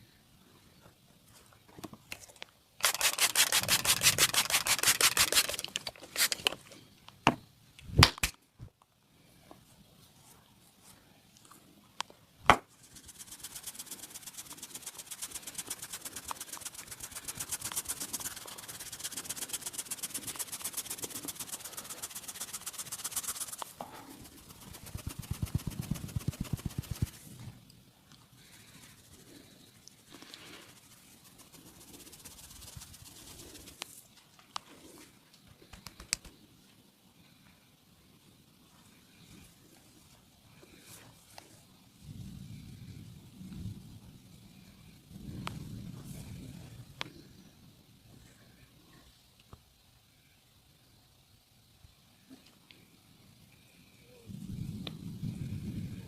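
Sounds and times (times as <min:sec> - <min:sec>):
hands patting and rubbing skin: 0:02.8 - 0:06.6, 0:12.8 - 0:27.2, 0:35.5 - 0:36.4
sharp snaps: 0:02.8 - 0:07.2, 0:07.8 - 0:08.4, 0:35.5 - 0:36.4.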